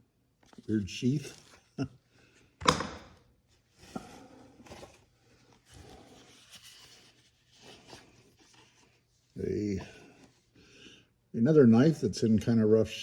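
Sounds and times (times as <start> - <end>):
rustling of items in toolbox: 3.5 - 10.4.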